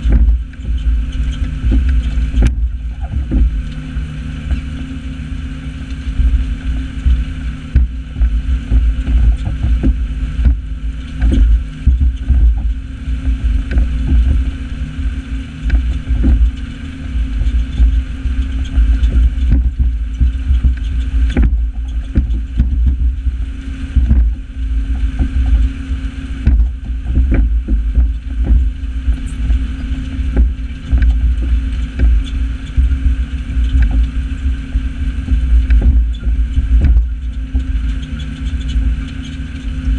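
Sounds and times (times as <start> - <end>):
wind buffeting microphone: 0.0 - 39.9.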